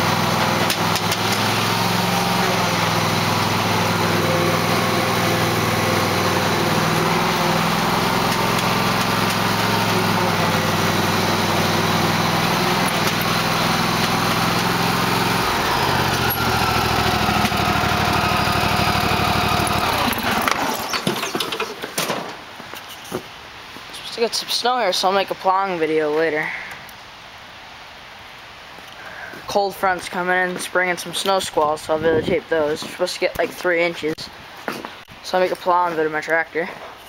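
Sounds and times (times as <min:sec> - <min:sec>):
small gasoline engine running: 0:00.0 - 0:21.7.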